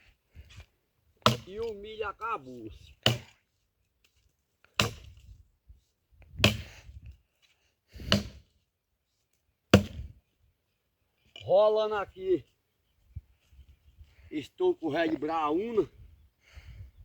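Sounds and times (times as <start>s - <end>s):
axe chopping into a log: 1.2s - 1.7s, 3.0s - 3.4s, 4.8s - 5.2s, 6.4s - 6.7s, 8.0s - 8.4s, 9.7s - 10.1s.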